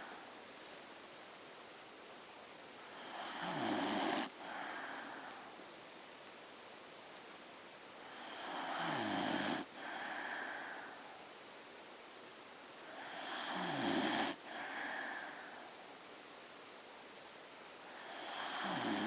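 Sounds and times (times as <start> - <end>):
pet snoring: 3.0 - 4.4, 8.1 - 10.0, 12.9 - 14.8, 18.0 - 19.0.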